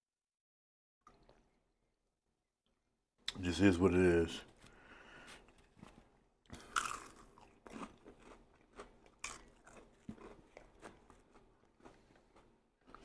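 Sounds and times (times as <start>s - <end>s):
person chewing food: 5.2s - 13.0s.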